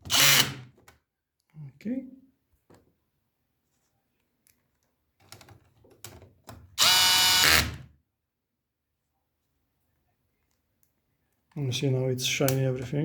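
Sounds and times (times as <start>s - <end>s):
cordless screwdriver driving a screw: 0.0s - 0.6s, 6.8s - 7.8s.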